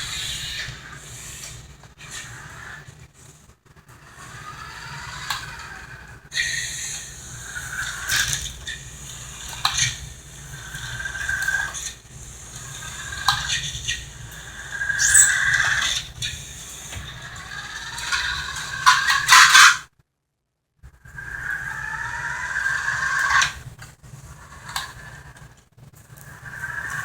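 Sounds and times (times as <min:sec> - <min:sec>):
toy car electric motor whining: 0:00.0 - 0:19.8, 0:21.0 - 0:25.6, 0:26.2 - 0:27.0.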